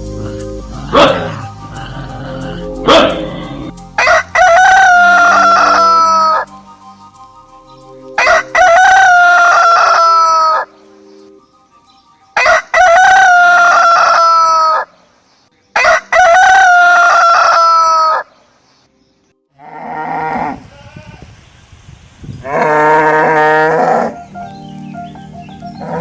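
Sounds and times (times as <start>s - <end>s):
rooster crowing: 4.0s - 6.5s, 8.2s - 10.7s, 12.4s - 14.9s, 15.8s - 18.3s.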